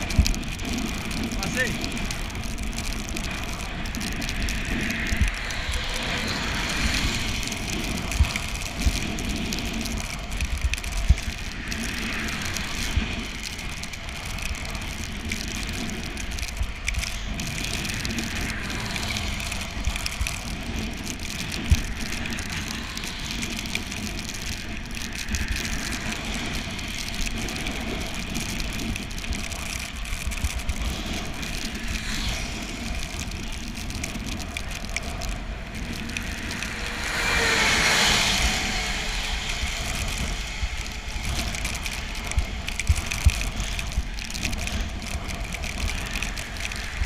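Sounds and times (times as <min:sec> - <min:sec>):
rushing swell: 0:00.0 - 0:10.2, 0:30.8 - 0:44.4
bicycle tyres hissing on wet road: 0:00.0 - 0:47.0
wind rumble: 0:00.0 - 0:47.0.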